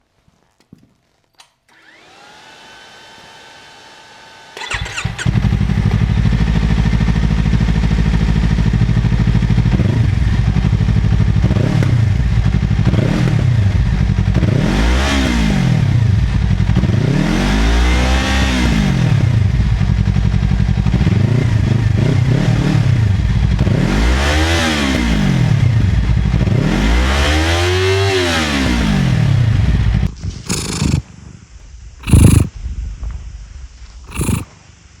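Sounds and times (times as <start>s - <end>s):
motorcycle engine idling and revving: 4.6s - 31.0s, 32.0s - 32.5s.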